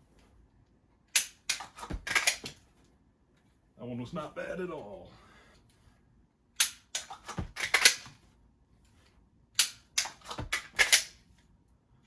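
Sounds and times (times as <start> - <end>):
pistol slide dropping: 1.1 - 2.6, 6.6 - 8.2, 9.6 - 11.2
pistol magazine clacking: 9.6 - 11.2.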